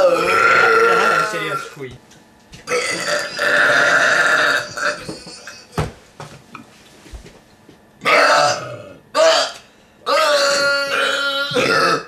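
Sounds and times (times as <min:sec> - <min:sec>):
person burping loudly: 0:00.0 - 0:01.8, 0:02.7 - 0:05.7, 0:08.0 - 0:12.0.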